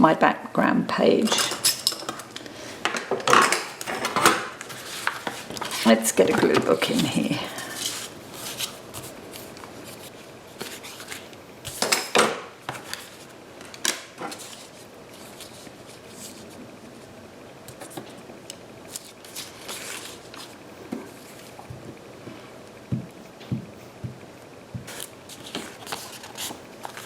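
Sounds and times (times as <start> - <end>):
paper rustling: 3.7 - 11.8, 12.7 - 13.3, 14.2 - 16.6, 18.9 - 21.6, 24.9 - 27.0.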